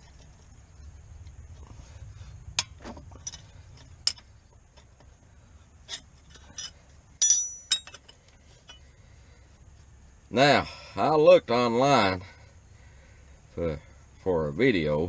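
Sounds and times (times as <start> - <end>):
metal tools clinking: 5.8 - 8.9.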